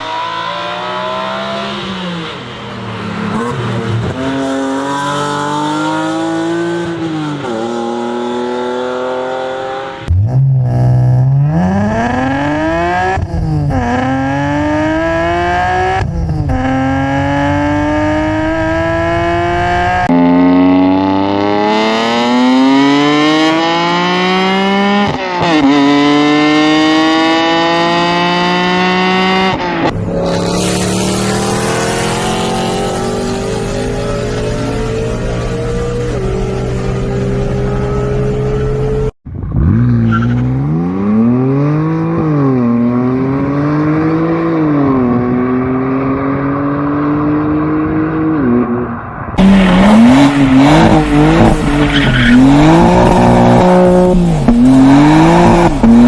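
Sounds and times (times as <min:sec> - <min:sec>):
car engines accelerating through gears: 0:00.0 - 0:56.0.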